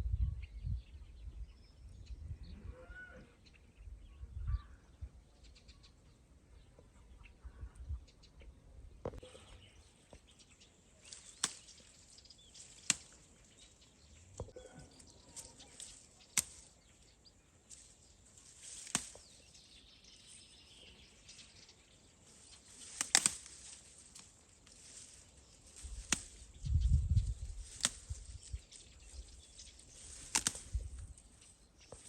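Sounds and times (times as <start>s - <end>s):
leafy stalks rustling: 9.9s - 32.0s
bean pods snapping off: 11.0s - 13.4s, 15.4s - 16.8s, 18.5s - 19.4s, 22.8s - 26.6s, 27.6s - 28.5s, 29.9s - 31.0s.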